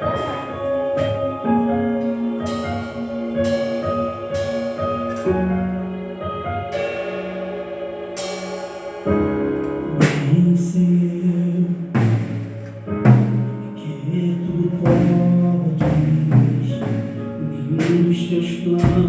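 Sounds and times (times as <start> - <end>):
gospel worship music: 0.0 - 19.0
sustained keyboard chords: 0.0 - 19.0
drum kit cymbal crashes and hits: 6.2 - 10.6.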